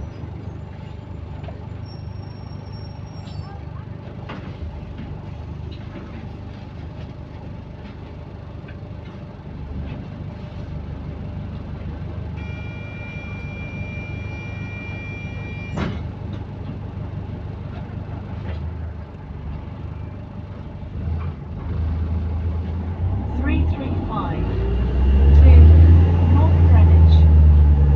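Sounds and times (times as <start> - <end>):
bus engine rumbling: 0.0 - 27.9
high electronic tone: 12.4 - 15.8.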